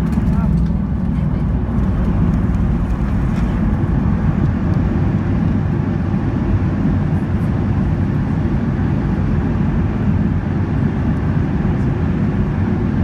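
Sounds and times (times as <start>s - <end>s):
rushing air: 0.0s - 7.1s
jet engines rumbling: 0.0s - 8.7s.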